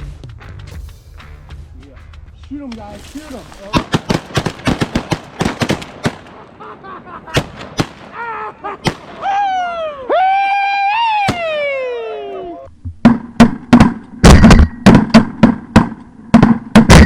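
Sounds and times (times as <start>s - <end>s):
shotgun shots: 2.9s - 6.6s, 7.3s - 8.2s, 8.8s - 9.2s, 13.0s - 17.0s
loud yelling cry: 8.1s - 12.7s.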